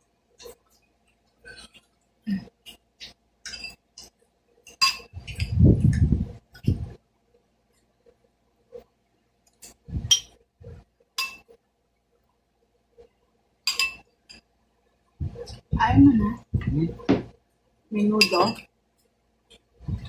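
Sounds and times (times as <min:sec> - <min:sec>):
metal utensils clinking on plate: 0:03.5 - 0:04.1, 0:04.7 - 0:05.5, 0:11.2 - 0:11.5, 0:13.7 - 0:14.4, 0:18.0 - 0:18.7.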